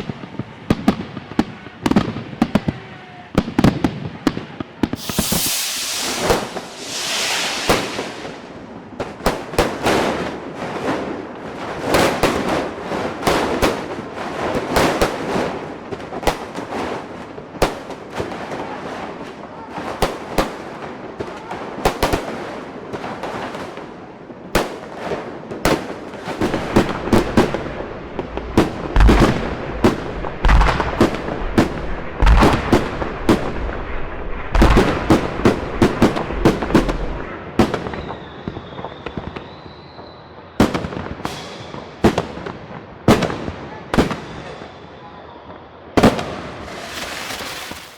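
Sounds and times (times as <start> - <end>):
fireworks bangs and crackles: 0.0 - 47.9
deep fireworks booms: 4.9 - 10.1, 26.2 - 38.0, 40.6 - 44.6.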